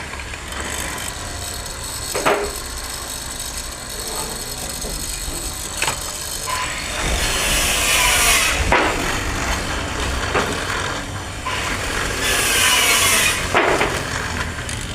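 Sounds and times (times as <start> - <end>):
sharp knocks: 7.0 - 9.3.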